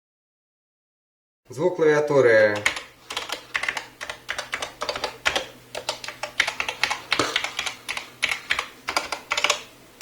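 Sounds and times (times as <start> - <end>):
mechanical keyboard typing: 2.4 - 9.7.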